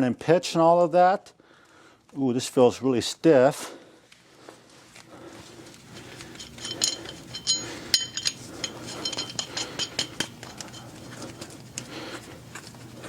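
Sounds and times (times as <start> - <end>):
lug nut clinking on metal: 6.4 - 10.9.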